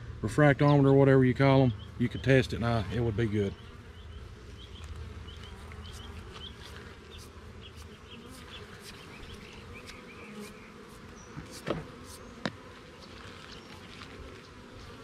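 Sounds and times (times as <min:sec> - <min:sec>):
bees buzzing: 0:01.1 - 0:15.0
sharp knocks on wood: 0:11.4 - 0:12.6.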